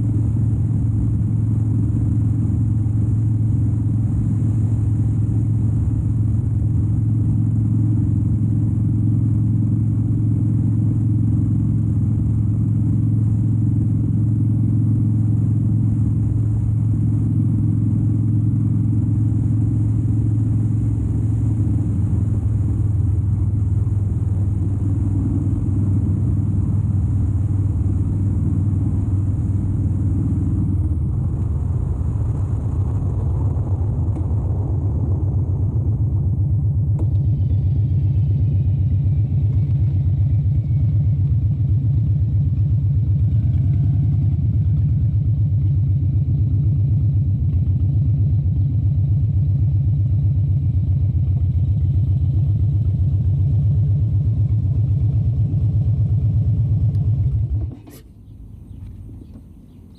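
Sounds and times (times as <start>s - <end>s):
motorcycle engine droning: 0.0s - 59.9s.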